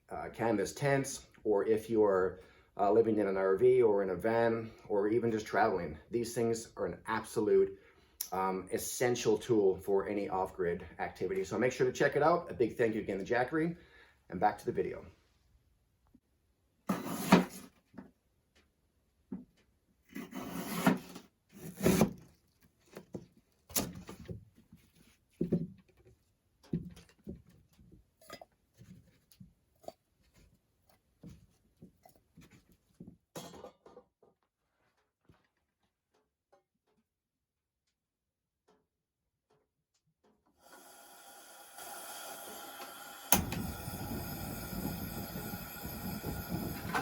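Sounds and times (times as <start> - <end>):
knocks and bumps of handling: 22.1 - 28.1.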